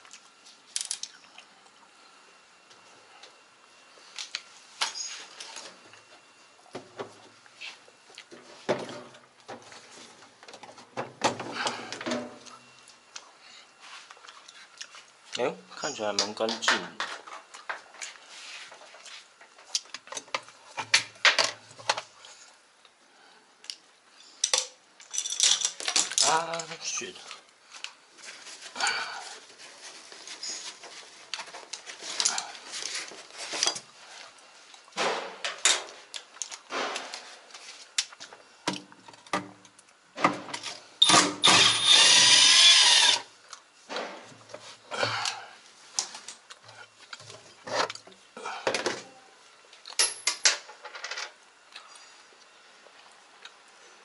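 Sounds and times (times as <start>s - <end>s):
power drill whirring: 41.0s - 43.3s.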